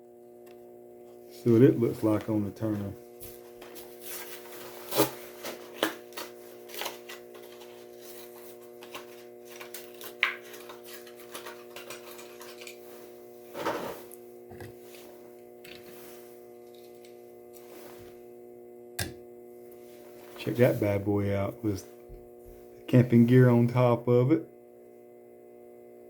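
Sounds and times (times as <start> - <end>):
faint steady hum: 0.0 - 26.0
plastic package crackling: 4.2 - 12.8.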